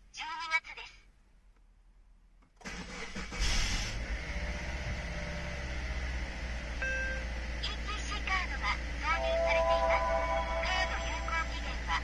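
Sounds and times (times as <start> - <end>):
car engine starting and running: 2.5 - 12.0.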